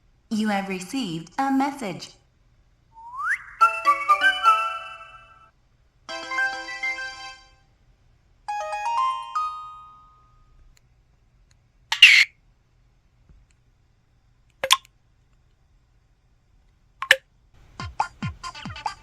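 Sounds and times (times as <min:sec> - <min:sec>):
short sharp blip: 0:14.6 - 0:14.8.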